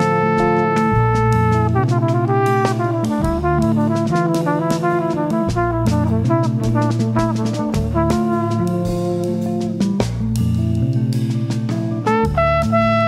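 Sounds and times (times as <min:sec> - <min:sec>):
flugelhorn melody: 0:00.0 - 0:09.8, 0:12.1 - 0:13.0
drum kit with cymbals: 0:00.0 - 0:13.0
fretless bass: 0:00.0 - 0:13.0.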